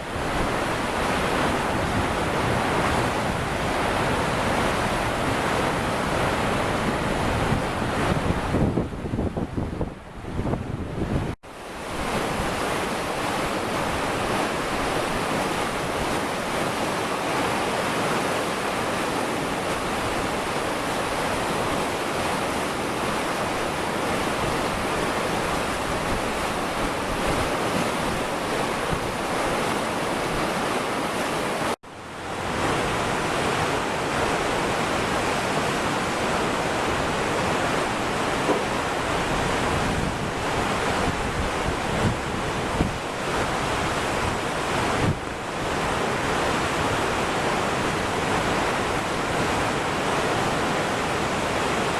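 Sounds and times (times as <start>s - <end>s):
floodwater rushing: 0.0s - 51.9s
wind buffeting microphone: 0.0s - 51.9s.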